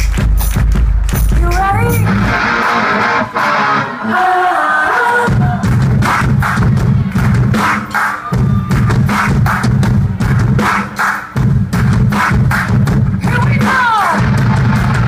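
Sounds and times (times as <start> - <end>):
pounding drum beat: 0.0 - 2.4, 5.2 - 15.0
loud live band music: 0.0 - 15.0.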